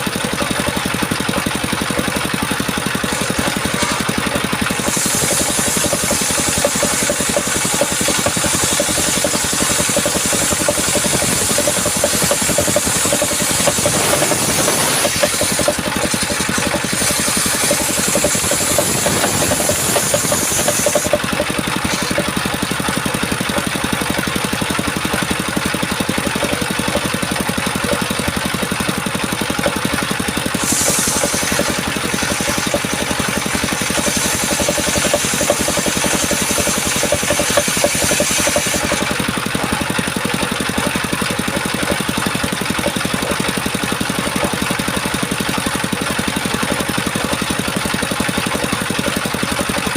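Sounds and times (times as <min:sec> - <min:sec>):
circular saw running: 0:00.0 - 0:49.9
blade cutting wood hiss: 0:03.1 - 0:22.3, 0:30.5 - 0:39.1.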